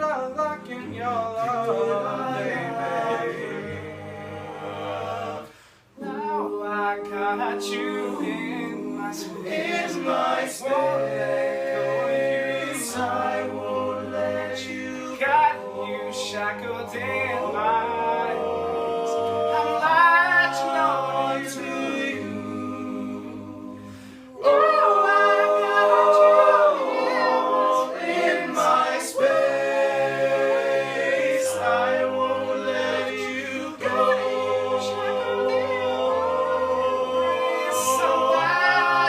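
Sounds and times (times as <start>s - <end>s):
a cappella voices singing: 0.0s - 39.0s.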